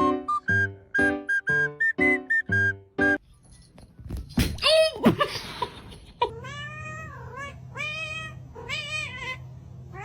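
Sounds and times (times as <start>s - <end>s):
cat meowing: 6.3s - 10.0s.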